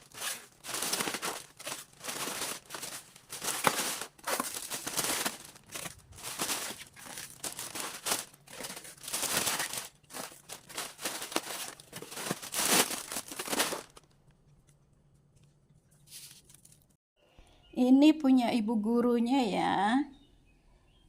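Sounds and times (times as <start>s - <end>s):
food packaging crinkling: 0.0s - 14.3s.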